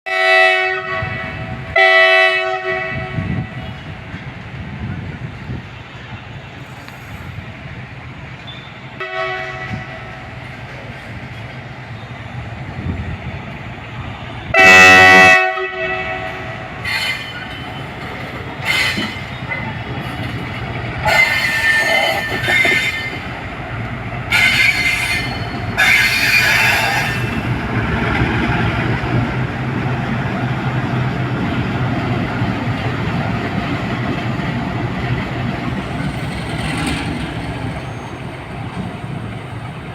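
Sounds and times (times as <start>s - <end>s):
locomotive horn blasts: 0.1s - 3.9s, 9.0s - 10.3s, 14.5s - 17.2s, 24.3s - 27.4s
train rumbling past: 0.1s - 39.9s
train wheel noise: 3.2s - 39.9s.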